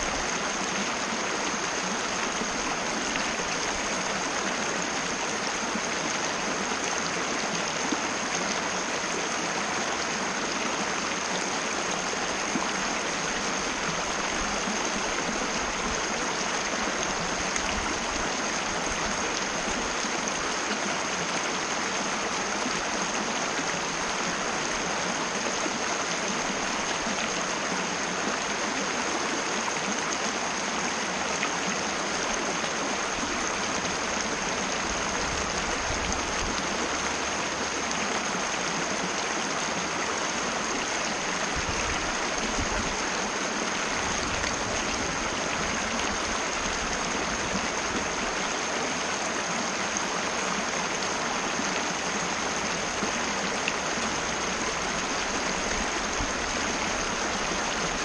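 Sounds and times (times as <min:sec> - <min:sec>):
river water rushing: 0:00.0 - 0:58.0.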